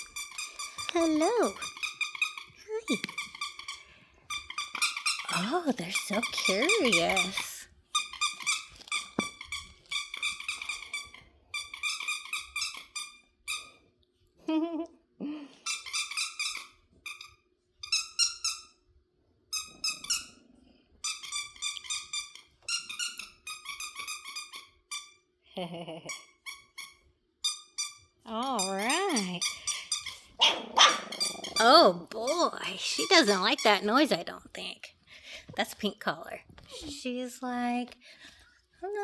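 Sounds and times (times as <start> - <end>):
squeaky dog toy squeaking: 0.0 - 13.8, 15.6 - 18.8, 19.5 - 20.4, 21.0 - 25.3, 26.1 - 34.2.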